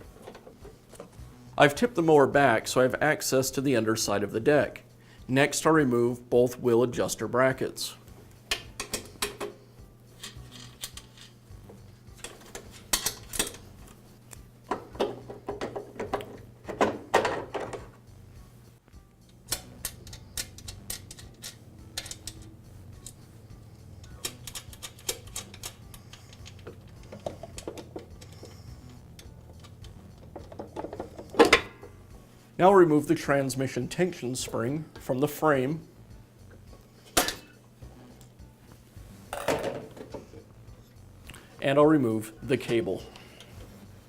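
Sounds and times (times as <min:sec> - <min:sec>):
hand tools and metal parts clattering: 0:00.0 - 0:01.2, 0:08.5 - 0:09.6, 0:10.2 - 0:13.8, 0:19.3 - 0:23.2, 0:24.0 - 0:31.9, 0:36.6 - 0:37.6, 0:39.3 - 0:40.9.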